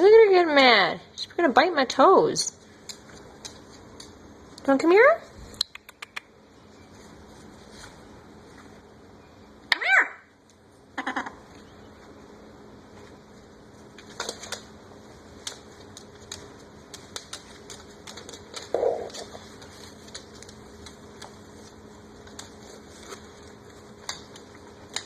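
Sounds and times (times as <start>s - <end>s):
parrot beaks clicking and tapping: 5.6s - 6.3s, 15.4s - 21.4s
parrot call: 9.7s - 10.3s, 11.0s - 11.4s.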